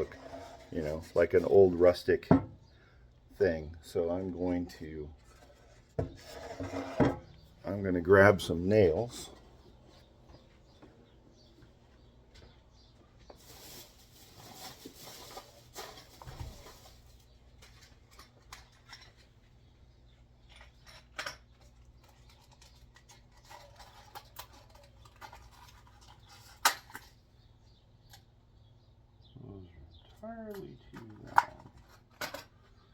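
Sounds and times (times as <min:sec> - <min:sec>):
rummaging through supplies: 0:13.1 - 0:19.4, 0:20.4 - 0:27.2.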